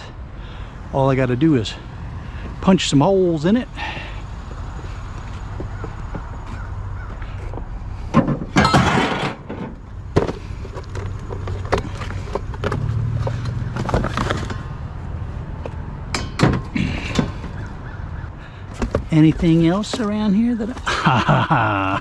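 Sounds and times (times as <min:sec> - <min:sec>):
metal clanks and knocks: 0:08.1 - 0:14.7, 0:15.6 - 0:17.7.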